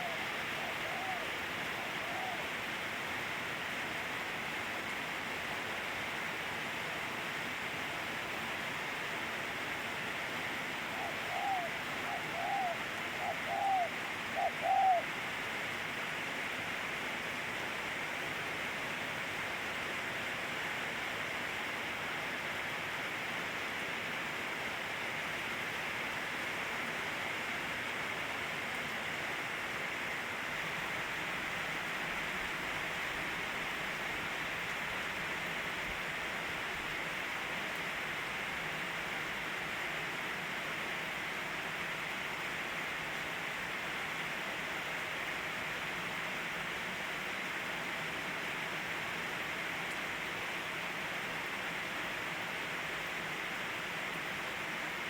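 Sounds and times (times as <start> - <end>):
bird calls: 0.0 - 2.5, 10.8 - 15.1
steady rain falling: 0.0 - 55.0.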